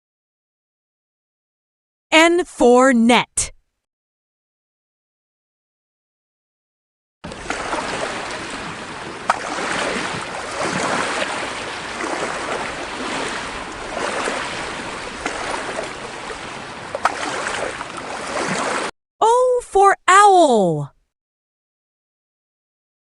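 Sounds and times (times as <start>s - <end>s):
water washing in surges: 7.2s - 18.9s.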